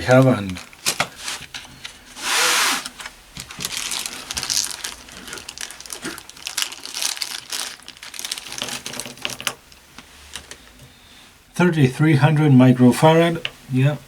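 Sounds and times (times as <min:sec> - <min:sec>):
plastic packaging crinkling: 0:00.0 - 0:10.8.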